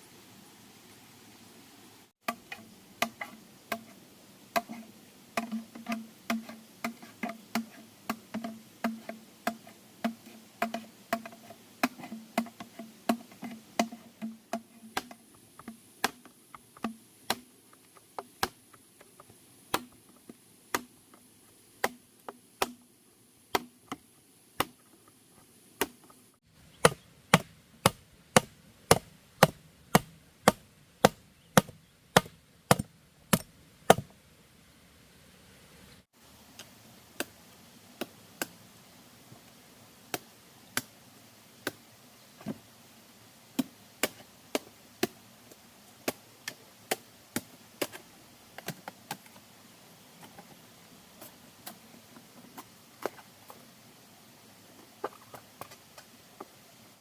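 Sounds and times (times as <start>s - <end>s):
wood being chopped: 2.3s - 3.9s, 5.4s - 17.5s, 18.2s - 18.7s, 19.7s - 20.1s, 20.7s - 21.0s, 21.8s - 22.9s, 23.5s - 24.0s, 24.6s - 24.8s, 25.8s - 26.1s, 26.8s - 34.1s.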